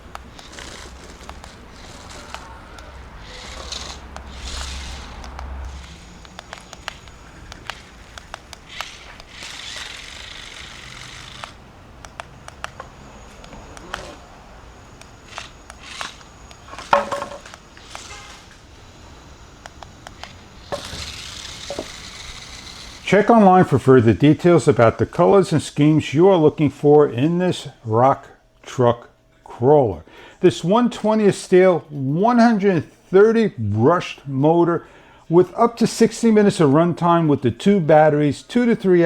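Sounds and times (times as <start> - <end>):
toy truck body rattling: 0.0 - 18.7, 19.8 - 23.2
high motor whine: 0.0 - 23.8.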